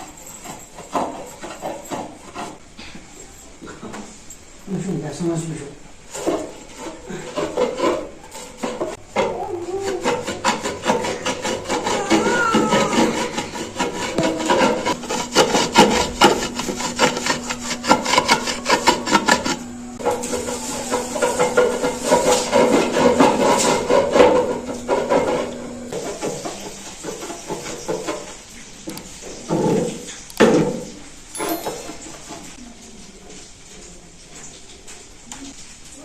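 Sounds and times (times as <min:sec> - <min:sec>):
rapid scraping strokes: 0:09.7 - 0:24.4.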